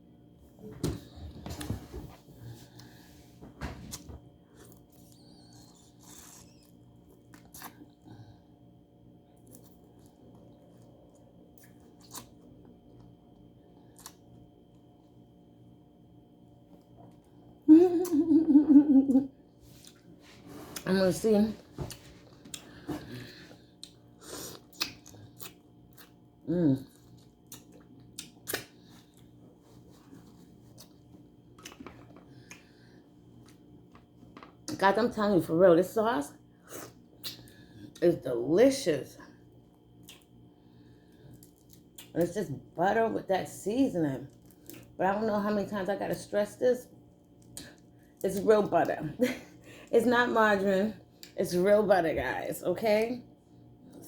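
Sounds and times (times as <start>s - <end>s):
soft wet chewing: 3.9s - 8.5s, 9.3s - 14.9s, 19.7s - 20.9s, 21.7s - 34.8s, 39.3s - 42.2s, 44.3s - 45.0s, 47.1s - 48.4s
person chewing shrimp: 9.4s - 13.0s, 21.9s - 26.2s, 26.9s - 29.4s, 40.0s - 40.3s.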